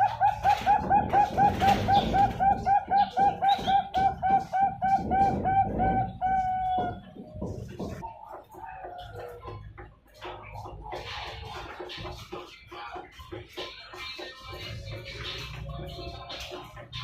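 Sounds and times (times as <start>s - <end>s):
dove cooing song: 0.0s - 9.6s.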